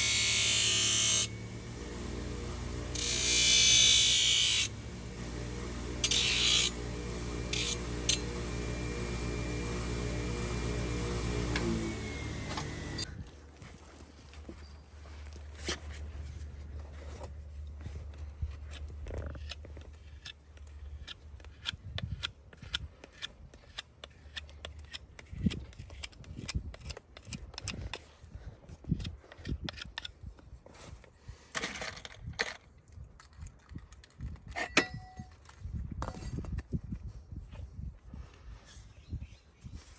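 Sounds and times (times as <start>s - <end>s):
low steady hum: 0.0s - 21.4s
hand tool clicks and scrapes: 6.0s - 8.6s, 17.2s - 36.6s.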